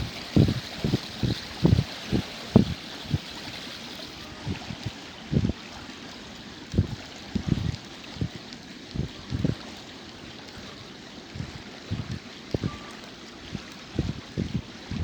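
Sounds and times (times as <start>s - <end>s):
rushing wind: 0.0s - 5.8s
lapping water: 0.0s - 15.0s
wind buffeting microphone: 0.0s - 15.0s.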